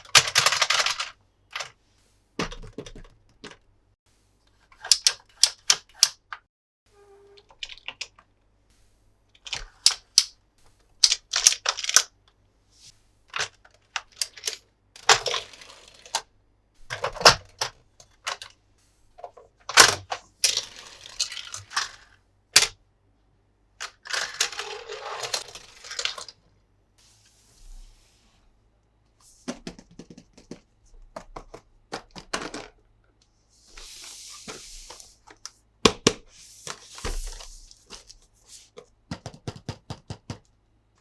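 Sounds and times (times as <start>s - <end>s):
plastic toy parts clicking: 0.0s - 1.7s, 4.7s - 6.4s, 9.4s - 10.3s, 11.0s - 12.1s, 13.3s - 16.3s, 19.7s - 22.8s, 23.8s - 26.4s.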